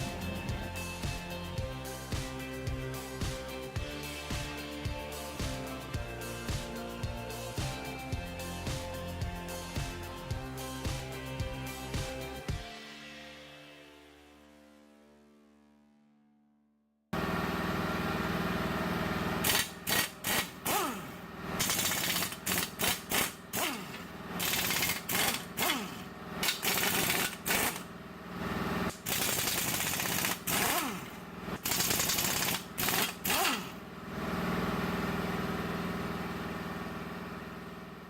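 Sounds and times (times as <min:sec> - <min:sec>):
impact wrench rattling bursts: 0:19.4 - 0:28.0, 0:28.9 - 0:33.9.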